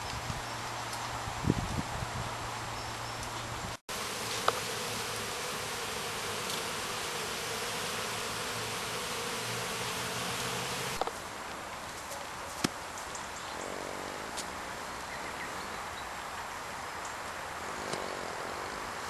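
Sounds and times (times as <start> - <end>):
honeybees humming: 3.9 - 11.1.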